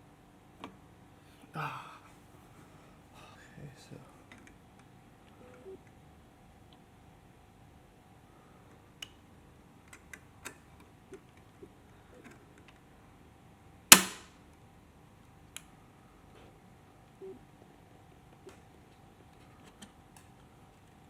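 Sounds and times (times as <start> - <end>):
loud sharp snap: 13.9 - 14.4.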